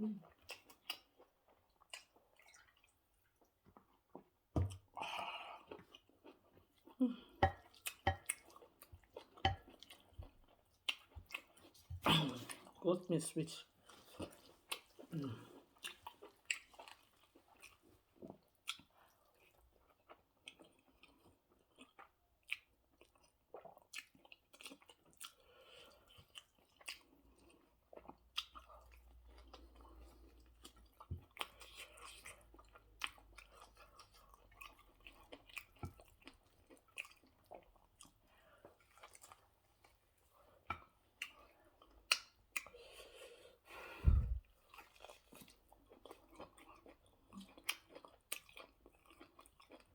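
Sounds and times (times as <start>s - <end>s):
person chewing food: 0.1s - 12.8s, 13.7s - 49.9s.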